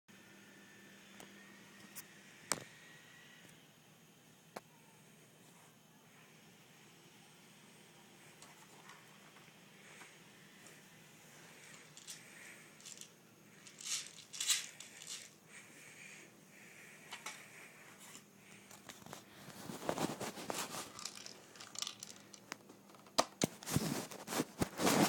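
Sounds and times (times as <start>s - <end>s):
rustling and crinkling: 11.4s - 15.4s, 17.1s - 25.0s.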